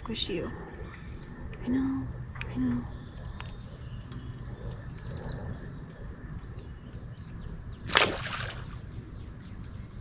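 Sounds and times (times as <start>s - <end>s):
faint high hum: 0.0s - 10.0s
bird chirp: 2.9s - 10.0s.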